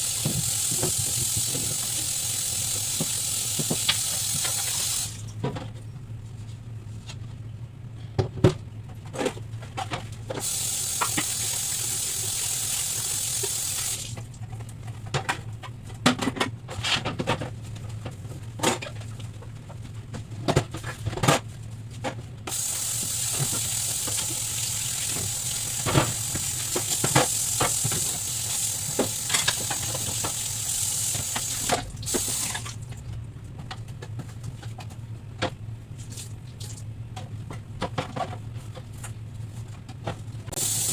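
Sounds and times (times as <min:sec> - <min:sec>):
kitchen tap running: 0:00.0 - 0:05.3, 0:10.4 - 0:14.3, 0:22.5 - 0:32.8, 0:40.5 - 0:40.9.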